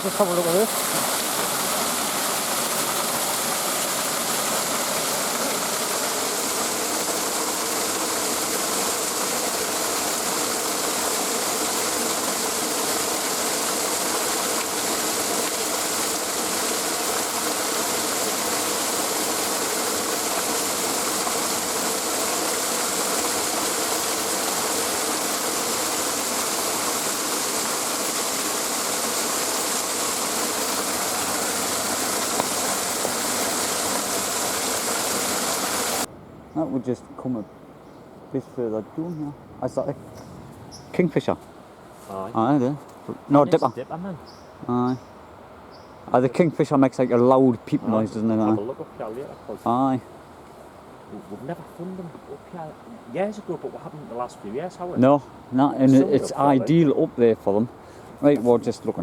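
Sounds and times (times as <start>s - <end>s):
stream water rushing: 0.0s - 36.3s, 40.6s - 59.0s.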